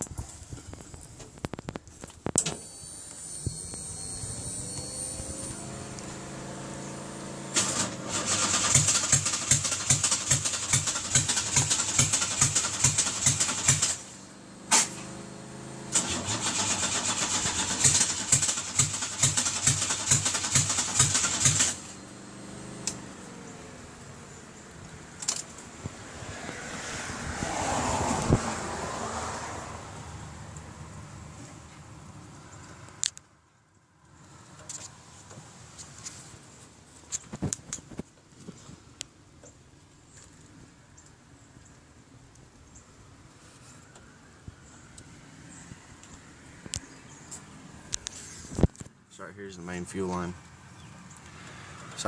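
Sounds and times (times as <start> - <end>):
starter cranking engine: 7.5 - 14.1, 15.9 - 22.0.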